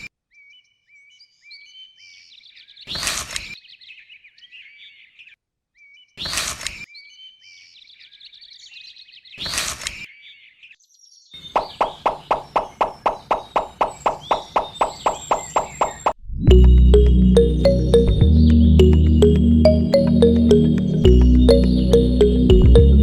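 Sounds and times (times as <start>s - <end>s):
birds chirping and twittering: 0.3s - 16.2s
rhythmic music track: 16.5s - 23.0s.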